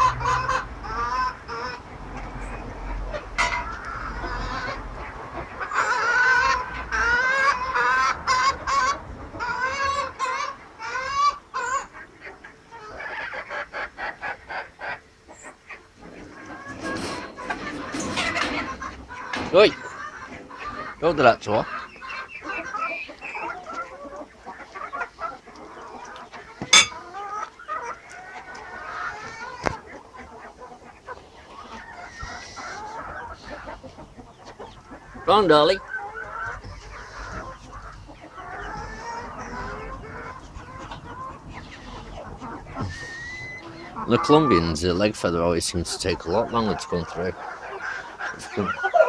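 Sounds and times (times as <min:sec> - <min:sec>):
chickens calling: 0:00.0 - 0:49.0.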